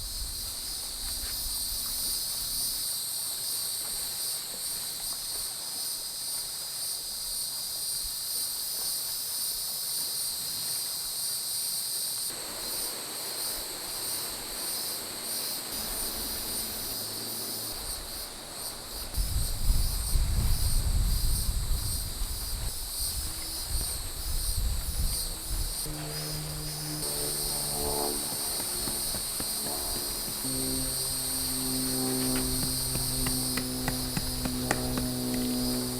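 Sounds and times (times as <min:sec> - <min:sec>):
insects shrilling: 0:12.2 - 0:35.9.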